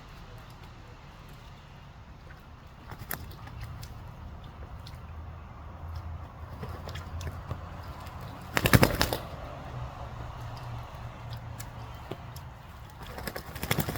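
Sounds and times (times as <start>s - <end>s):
pigeon wing flaps and splashes: 0.0s - 13.9s.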